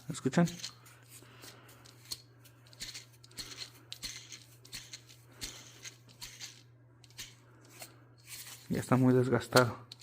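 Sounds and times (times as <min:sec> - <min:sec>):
belt tensioner pulley grinding: 0:02.1 - 0:07.4.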